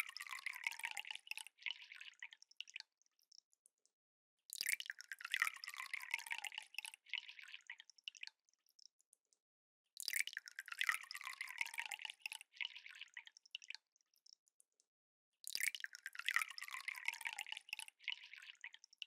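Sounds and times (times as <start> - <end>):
liquid pouring into a glass: 0.0 - 2.8, 4.5 - 8.2, 10.0 - 13.7, 15.4 - 18.9.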